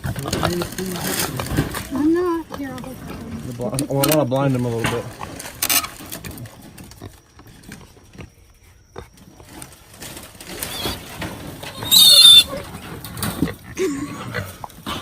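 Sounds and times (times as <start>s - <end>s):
faint rustling: 0.0s - 13.6s
piglet squealing: 10.6s - 11.0s, 11.7s - 12.6s.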